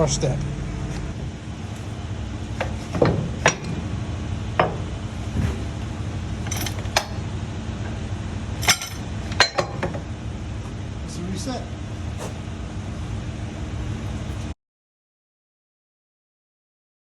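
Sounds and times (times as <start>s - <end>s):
steady low hum: 0.0s - 14.6s
towing hook latching clanks: 1.7s - 4.0s, 4.6s - 7.3s, 8.6s - 10.8s.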